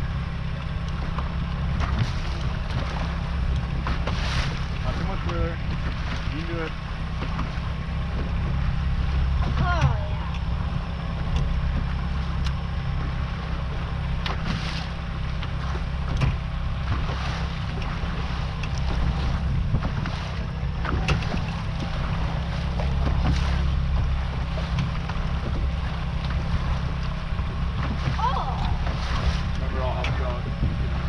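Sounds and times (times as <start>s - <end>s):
boat motor humming: 0.0s - 31.0s
wind on microphone: 15.6s - 31.0s.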